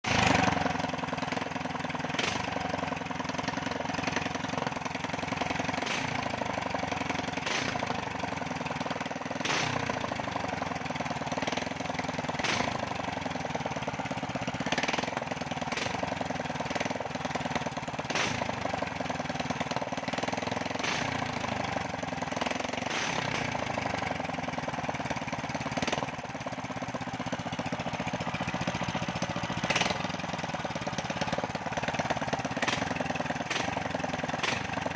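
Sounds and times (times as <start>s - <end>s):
small engine running: 0.0s - 34.9s
sharp engine cracks: 2.0s - 2.8s, 5.4s - 6.6s, 7.3s - 8.5s, 9.2s - 10.2s, 11.4s - 12.9s, 18.0s - 18.8s, 20.1s - 21.6s, 22.4s - 23.9s, 28.2s - 34.9s.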